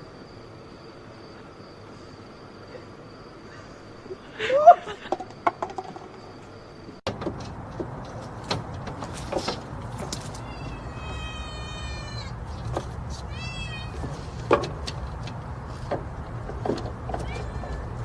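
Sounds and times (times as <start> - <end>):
cat meowing: 10.4 - 12.4, 13.3 - 14.0, 17.2 - 18.0.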